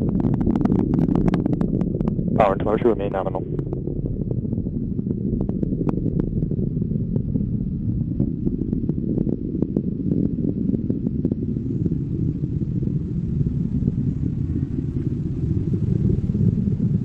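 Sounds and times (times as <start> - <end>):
sharp crackles: 0.0 - 13.1
rocket engines rumbling: 0.0 - 17.0.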